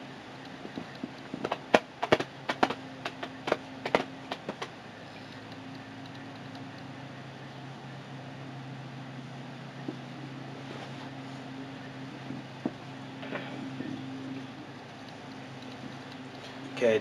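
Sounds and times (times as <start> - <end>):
computer fans humming: 0.0 - 17.0
sharp clicks: 14.8 - 16.6.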